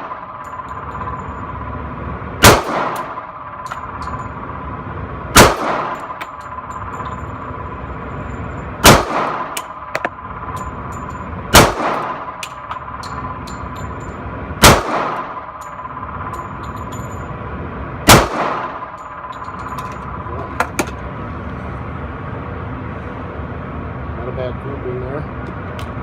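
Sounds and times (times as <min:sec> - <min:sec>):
gunshot echo ringing: 0:02.4 - 0:03.4, 0:05.4 - 0:06.2, 0:08.8 - 0:09.7, 0:11.5 - 0:12.4, 0:14.6 - 0:15.5, 0:18.1 - 0:18.9
pistol shots: 0:02.4 - 0:03.4, 0:05.3 - 0:06.2, 0:08.8 - 0:10.1, 0:11.5 - 0:12.7, 0:14.6 - 0:15.5, 0:18.0 - 0:19.0.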